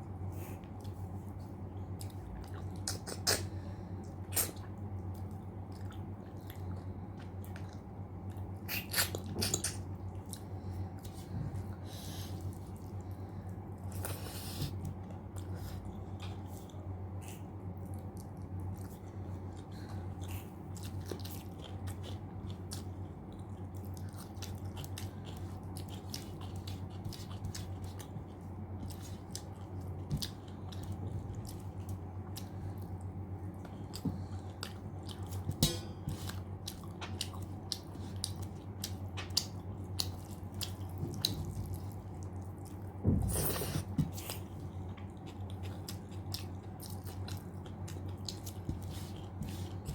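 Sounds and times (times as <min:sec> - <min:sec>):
steady low hum: 0:00.0 - 0:49.9
chewing and wet mouth clicks: 0:36.3 - 0:42.9, 0:44.2 - 0:49.7.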